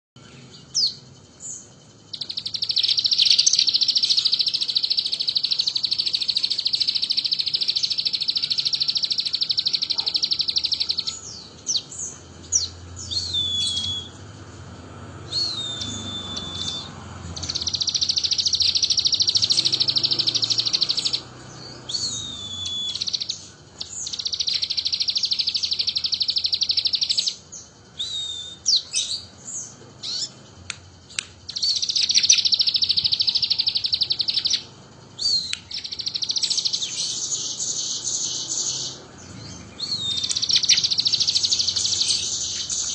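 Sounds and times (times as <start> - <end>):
songbird rapid high trills: 0.2 - 42.9
whistled notes sliding downward: 13.0 - 14.2, 15.2 - 17.0, 21.9 - 23.3.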